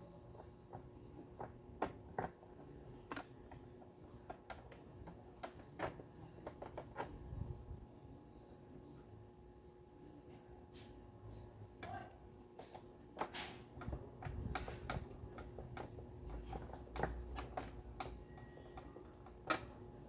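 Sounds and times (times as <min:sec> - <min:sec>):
faint steady hum: 0:00.0 - 0:20.0
light clicks and taps: 0:12.6 - 0:19.8.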